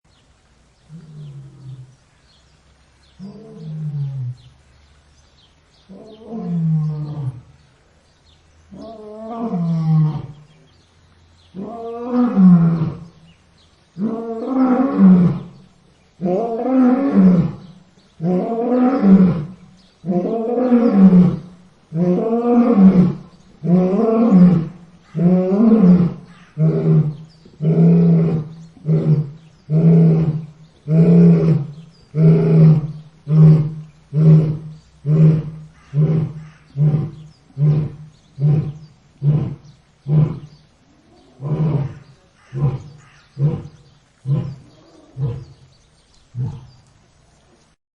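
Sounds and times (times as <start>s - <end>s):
lion roaring: 16.2s - 40.5s, 41.1s - 45.6s, 46.3s - 46.8s.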